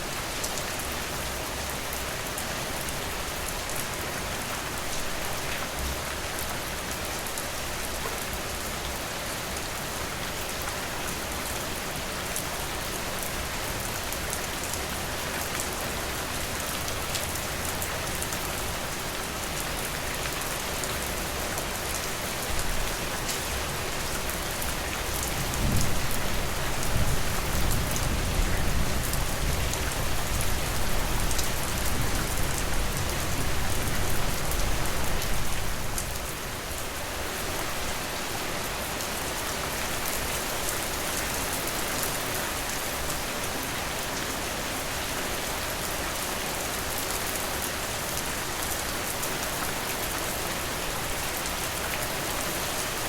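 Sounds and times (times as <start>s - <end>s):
steady rain: 0.0s - 53.0s
low rumble of thunder: 25.3s - 34.3s.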